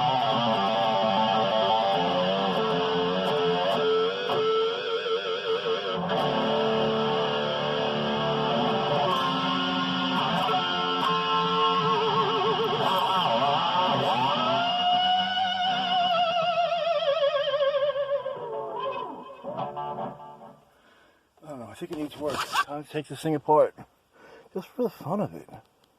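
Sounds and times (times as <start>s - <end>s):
distorted electric guitar with vibrato: 0.0s - 20.7s.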